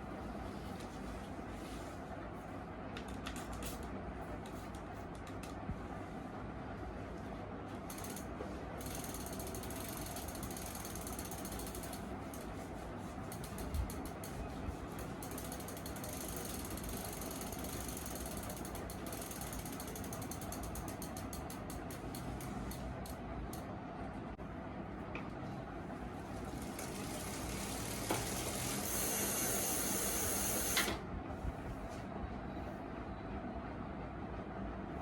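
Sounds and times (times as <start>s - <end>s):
bicycle freehub ratcheting clicks: 7.9s - 12.5s, 13.3s - 14.3s, 15.2s - 23.6s.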